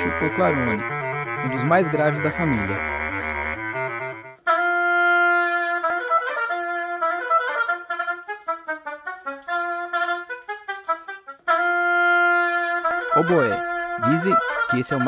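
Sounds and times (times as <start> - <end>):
oboe melody: 0.0 - 15.0.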